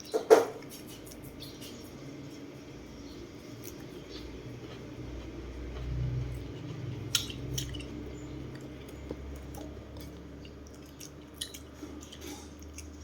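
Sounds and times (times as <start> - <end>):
chewing with crunches: 0.0 - 2.6, 3.3 - 13.0.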